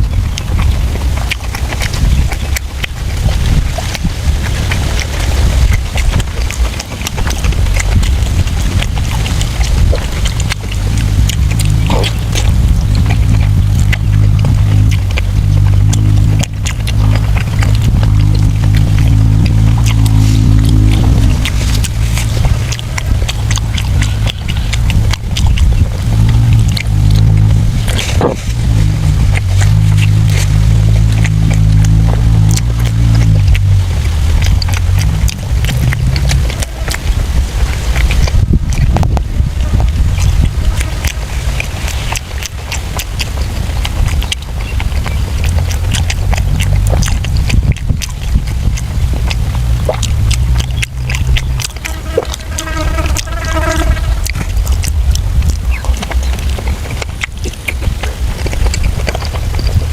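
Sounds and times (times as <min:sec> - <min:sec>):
low wind rumble on microphone: 0:00.0 - 0:59.9
steady low hum: 0:00.0 - 0:59.9
wet chewing and smacking: 0:00.0 - 0:59.9.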